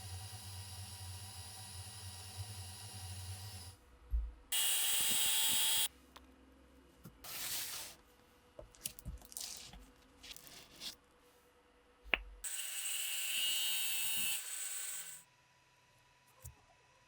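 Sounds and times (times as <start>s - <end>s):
small motor humming: 0.0s - 3.8s, 4.5s - 5.9s, 12.4s - 15.2s.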